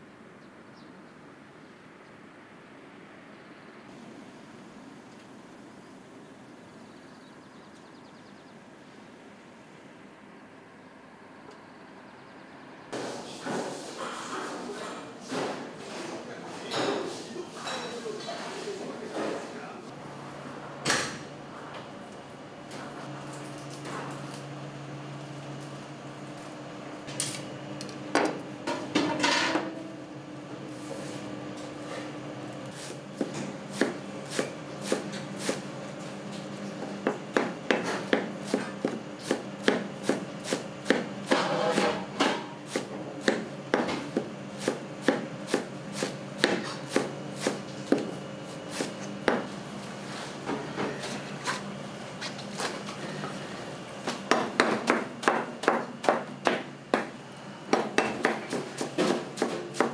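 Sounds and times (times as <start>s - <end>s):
kitchen equipment hum: 12.5s - 59.9s
knife chopping on cutting board: 32.8s - 35.6s, 37.0s - 49.5s, 54.0s - 57.1s, 57.7s - 59.9s.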